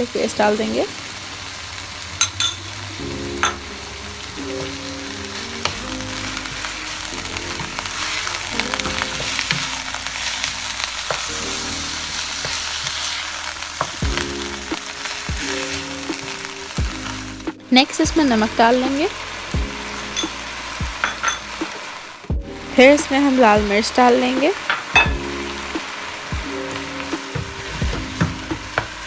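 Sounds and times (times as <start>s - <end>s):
meat sizzling in oil: 0.0s - 29.0s
soft background music: 0.0s - 29.0s
spatula scraping pan: 2.2s - 17.2s.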